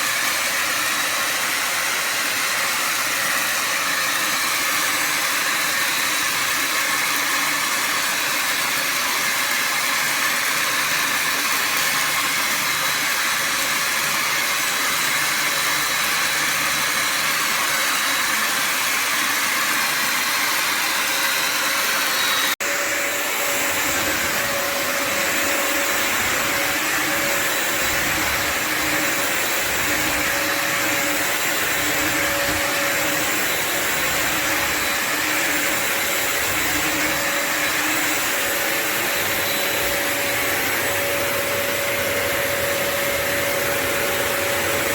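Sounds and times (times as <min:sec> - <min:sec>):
steam mop vacuum motor running: 0:00.0 - 0:44.9
steady whine: 0:22.5 - 0:44.9.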